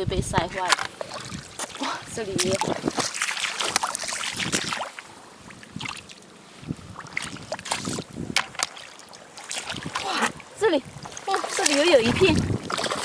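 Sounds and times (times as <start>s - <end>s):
wet squelches in mud: 0.6s - 13.0s.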